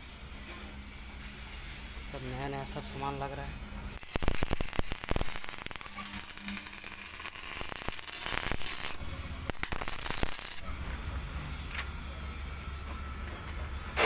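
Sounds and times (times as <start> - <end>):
welding arc crackling: 3.8 - 11.9.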